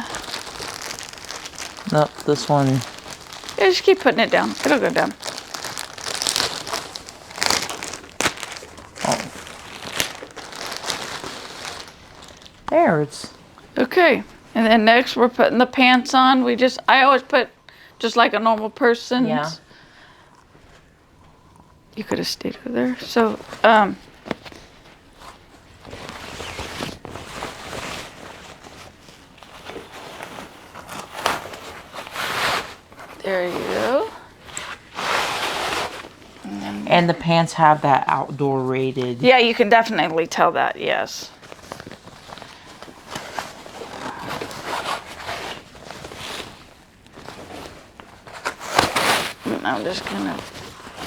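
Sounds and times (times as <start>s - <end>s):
fabric rustling: 0.0s - 16.5s, 20.5s - 51.0s.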